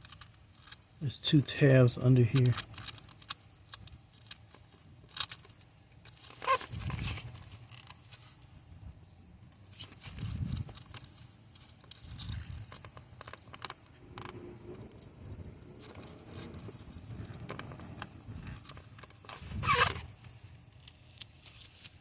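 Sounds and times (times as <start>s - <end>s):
clicks and scrapes of plastic clips: 2.3s - 8.0s, 9.8s - 14.4s.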